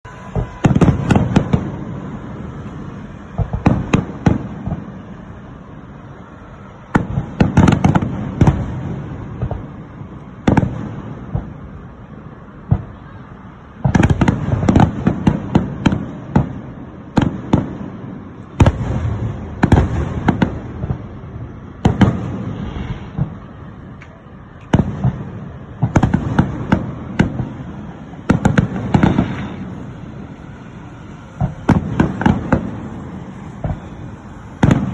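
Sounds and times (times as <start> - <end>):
fireworks bangs and crackles: 0.0 - 34.9.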